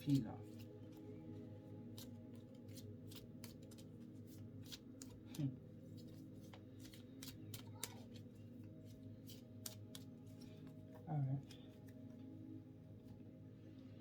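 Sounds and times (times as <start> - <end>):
low steady hum: 0.0 - 14.0
cards being shuffled: 1.8 - 10.8.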